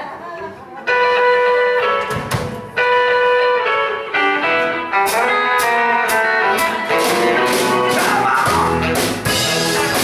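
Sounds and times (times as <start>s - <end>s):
drum and cymbal hits: 5.1s - 10.0s.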